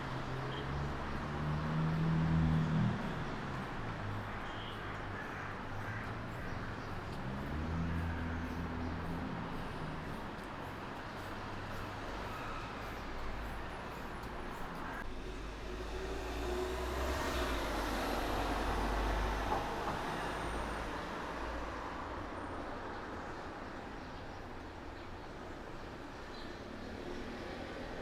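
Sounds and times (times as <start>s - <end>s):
road traffic rumble: 0.0s - 28.0s
heavy vehicle passing: 0.2s - 22.1s.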